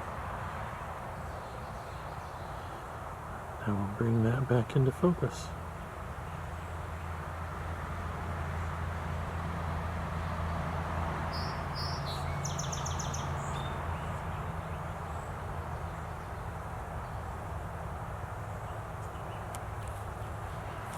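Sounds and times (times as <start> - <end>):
bird chirps and trill: 11.3 - 14.3.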